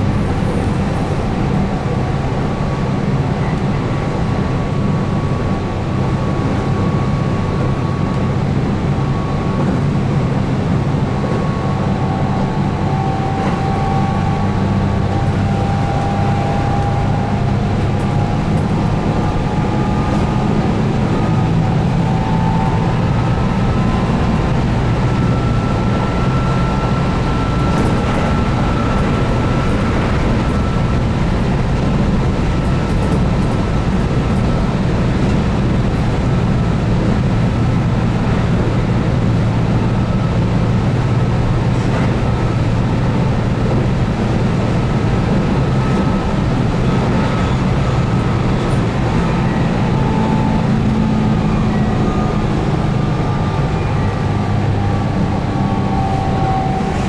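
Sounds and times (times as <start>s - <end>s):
wheels rumbling on rails: 0.0s - 57.0s.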